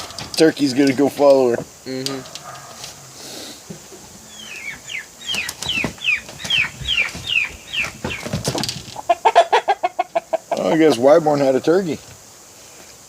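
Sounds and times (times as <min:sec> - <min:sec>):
poultry peeping: 0:03.9 - 0:11.1.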